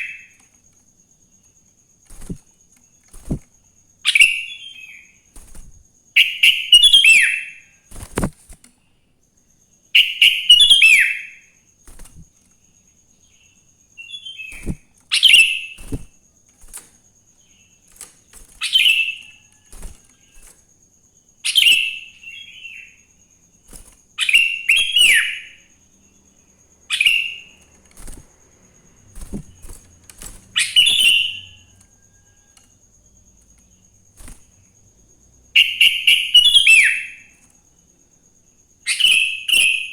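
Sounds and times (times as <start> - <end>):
bulbul singing: 13.2 - 16.2, 26.9 - 32.4.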